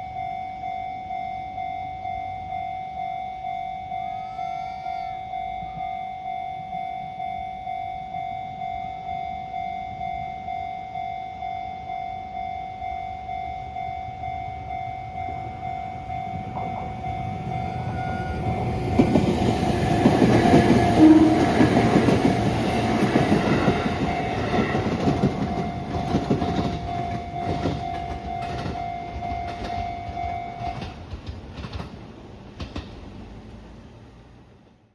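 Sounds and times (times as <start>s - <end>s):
train wheels clattering: 18.3s - 33.3s
level crossing alarm bell ringing: 21.0s - 23.0s.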